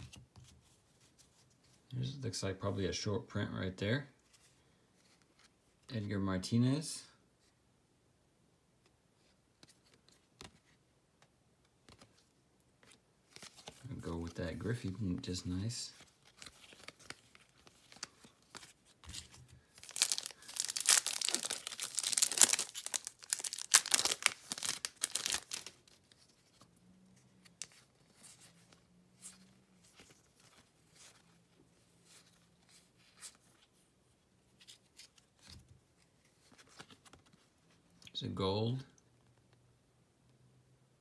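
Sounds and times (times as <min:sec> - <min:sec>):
foil wrapper tearing and crinkling: 0:19.8 - 0:25.8.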